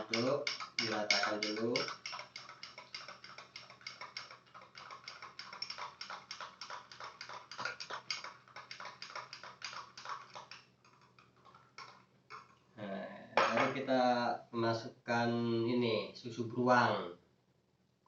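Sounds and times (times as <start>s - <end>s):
spoon stirring and clicking: 0.0s - 12.6s.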